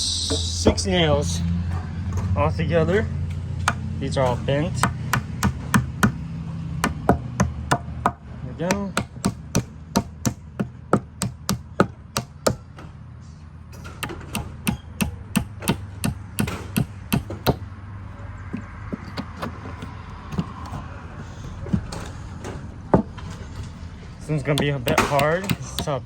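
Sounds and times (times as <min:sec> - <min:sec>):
hammer striking nail in wood: 0:03.6 - 0:03.9, 0:04.8 - 0:06.2, 0:06.8 - 0:12.7, 0:13.8 - 0:17.7, 0:24.5 - 0:26.0.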